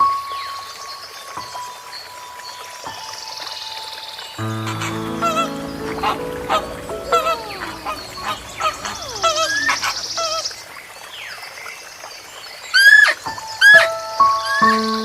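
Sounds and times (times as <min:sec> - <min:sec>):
buzzy bird trill: 0:04.4 - 0:10.5.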